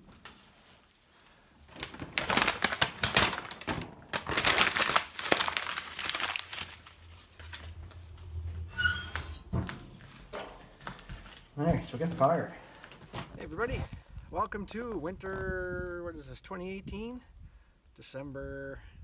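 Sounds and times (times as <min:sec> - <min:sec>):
fire crackling: 0:00.0 - 0:14.3
low rumble: 0:05.2 - 0:12.6.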